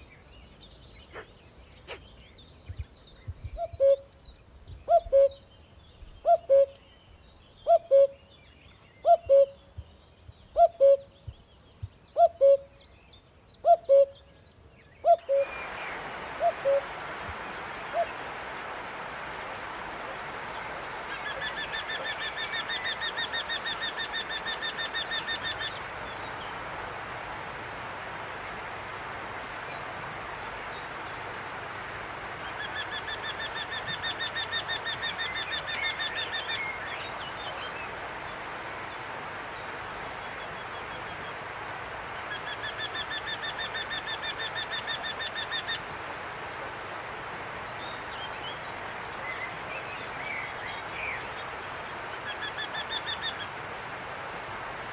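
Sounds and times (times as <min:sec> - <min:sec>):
steady background hiss: 0:00.0 - 0:54.9.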